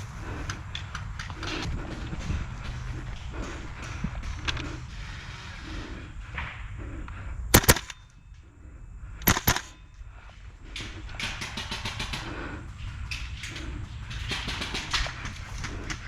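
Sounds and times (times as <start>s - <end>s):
faint rapid clicking: 7.1s - 8.0s, 9.2s - 9.8s, 10.8s - 16.0s
airsoft rifle shots: 7.5s - 8.0s, 9.2s - 9.8s.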